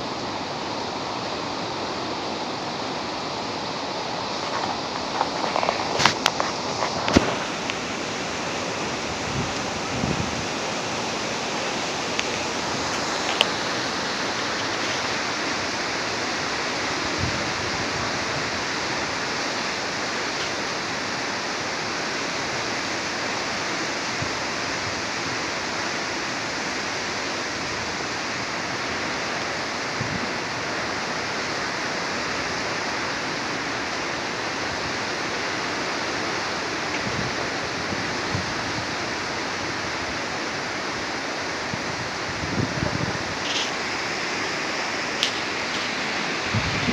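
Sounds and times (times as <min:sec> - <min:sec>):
rain: 0:00.0 - 0:46.9
wind: 0:00.0 - 0:46.9.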